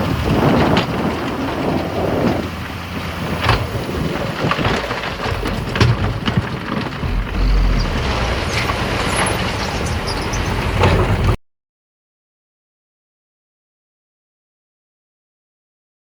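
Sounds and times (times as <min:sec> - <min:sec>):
heavy machinery rumbling: 0:02.7 - 0:11.4
machinery clanks and knocks: 0:03.4 - 0:11.4.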